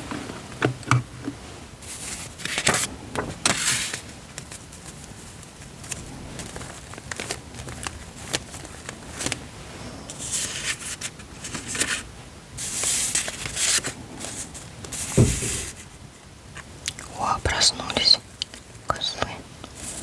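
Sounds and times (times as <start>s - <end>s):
paper rustling and sliding: 1.3s - 16.2s, 19.8s - 20.0s
soft thud: 15.1s - 15.8s.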